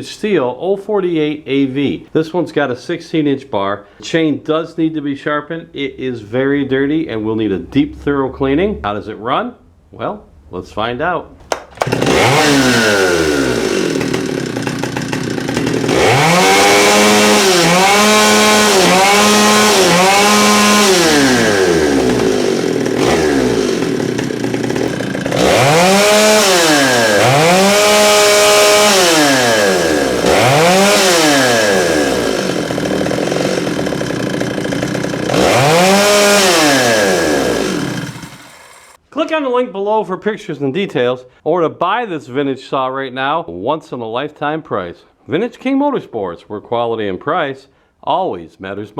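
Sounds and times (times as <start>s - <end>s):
chainsaw engine revving: 11.5s - 39.0s.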